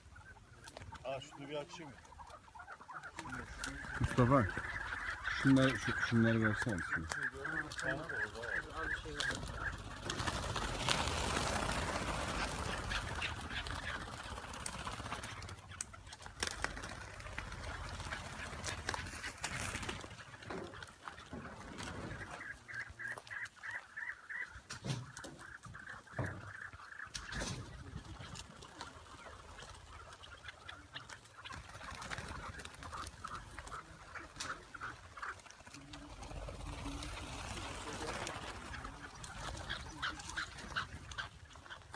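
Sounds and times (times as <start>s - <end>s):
bird calls: 0.0s - 41.9s
flutter of wings: 7.1s - 23.6s, 30.8s - 41.9s.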